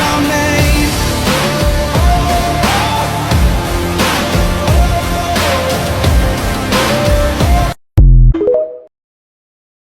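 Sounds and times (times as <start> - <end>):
music with heavy driving beat: 0.0 - 7.8.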